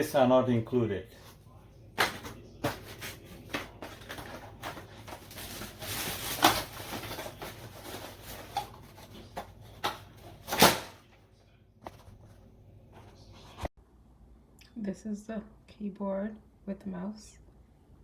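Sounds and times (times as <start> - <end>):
packaging rustling: 2.0 - 10.9.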